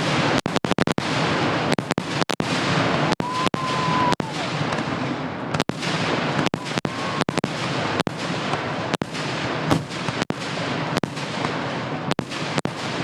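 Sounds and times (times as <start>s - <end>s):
fireworks bursts and crackling: 0.0s - 13.0s
whistling firework shell: 2.9s - 4.5s, 6.4s - 7.4s.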